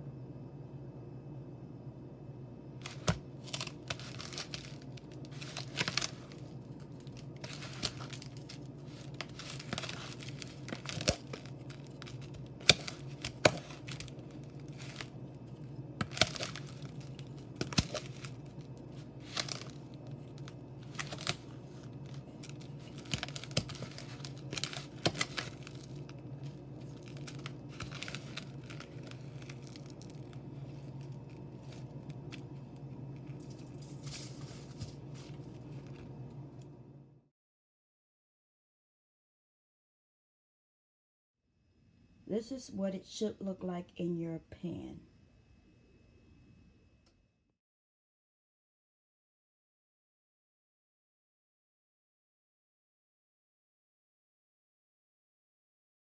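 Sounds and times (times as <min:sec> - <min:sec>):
steady low hum: 0:00.0 - 0:37.2
crumb-coated food crinkling and clicking: 0:02.8 - 0:36.1.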